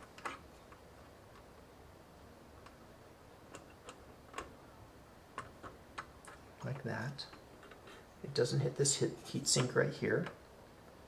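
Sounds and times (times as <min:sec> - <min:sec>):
light clicks and taps: 0:09.5 - 0:10.4.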